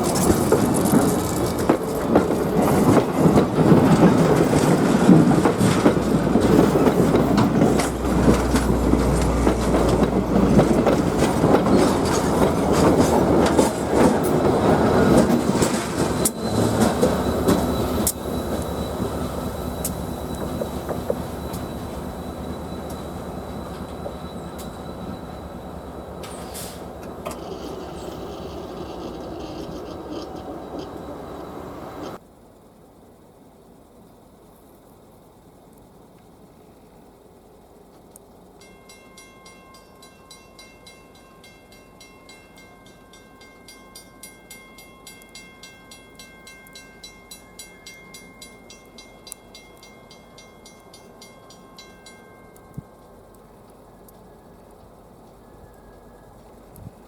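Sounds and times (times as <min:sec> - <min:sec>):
train wheels clattering: 0:00.0 - 0:32.2
high wheel squeal: 0:06.7 - 0:32.2.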